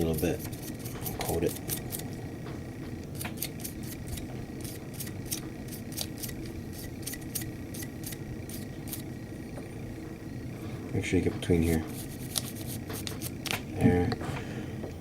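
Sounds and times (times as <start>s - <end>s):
scratchy hissing strokes: 11.6s - 13.5s.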